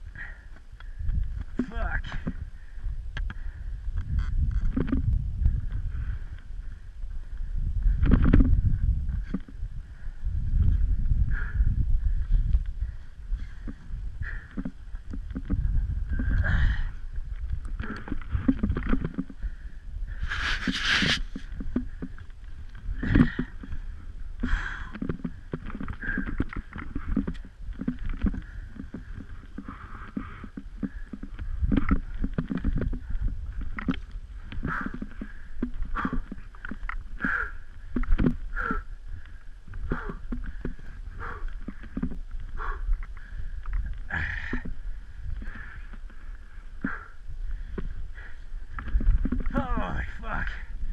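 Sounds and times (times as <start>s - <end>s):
wind rumble on microphone: 0.0s - 50.9s
skis and boots crunching in snow: 20.2s - 22.6s.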